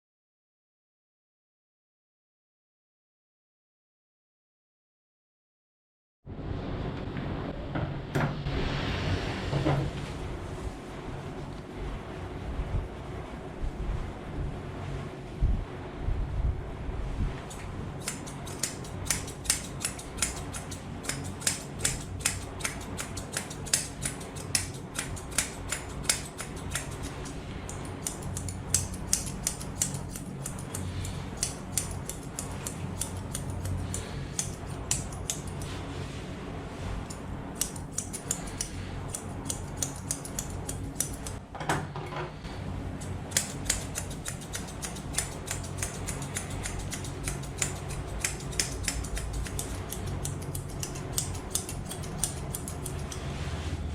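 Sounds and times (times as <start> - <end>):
steady low hum: 6.3 - 53.9
scissors snipping fur: 17.5 - 35.8, 37.0 - 41.4, 43.0 - 53.3.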